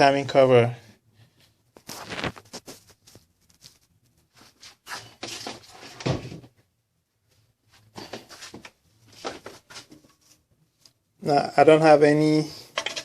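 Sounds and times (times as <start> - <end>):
metal cover knocking and scraping: 12.8 - 13.0.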